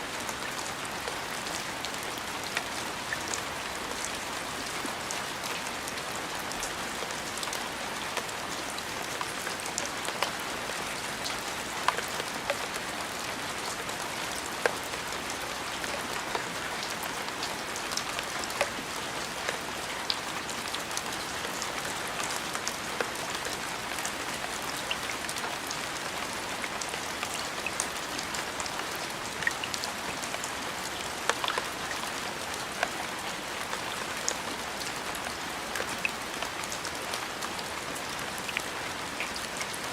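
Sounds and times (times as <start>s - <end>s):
steady rain: 0.0s - 39.9s
raindrops ticking: 15.8s - 34.4s.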